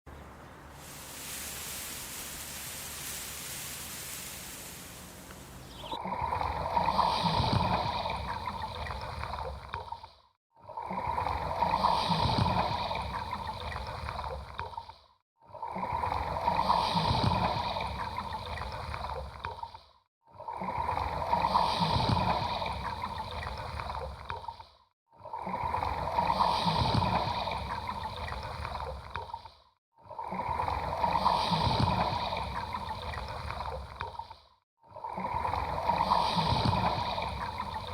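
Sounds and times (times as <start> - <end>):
ocean waves washing in: 0.1 - 9.4, 35.0 - 37.9.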